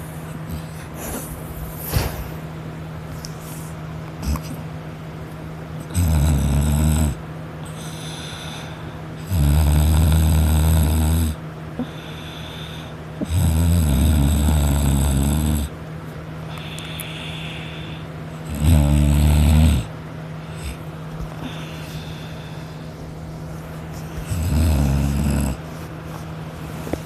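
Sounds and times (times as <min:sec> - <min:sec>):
person snoring: 0:05.9 - 0:07.2, 0:07.8 - 0:15.7, 0:16.6 - 0:19.9, 0:24.2 - 0:25.6
quiet breathing: 0:07.7 - 0:09.2, 0:11.8 - 0:13.1, 0:16.4 - 0:18.2, 0:20.4 - 0:27.0.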